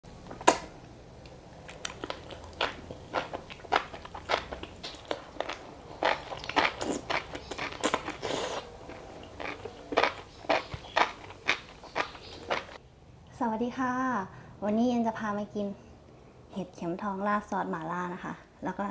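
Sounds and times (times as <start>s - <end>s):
chewing crunchy food: 1.2s - 12.8s.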